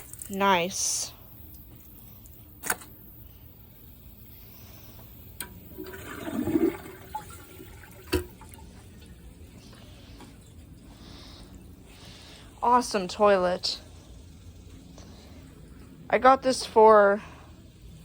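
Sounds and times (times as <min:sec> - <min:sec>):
toilet water running: 0:05.2 - 0:18.0.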